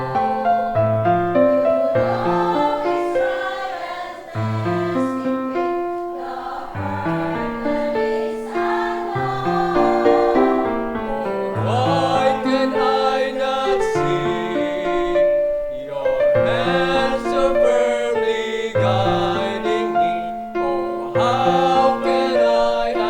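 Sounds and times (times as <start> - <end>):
choir singing a hymn: 0.0 - 23.0.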